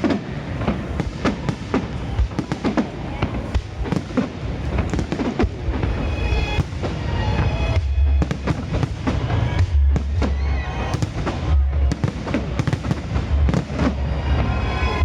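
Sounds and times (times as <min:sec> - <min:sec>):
deep firework booms: 0:00.0 - 0:14.5
firework bangs and crackles: 0:00.0 - 0:15.0
music playing: 0:05.2 - 0:15.0.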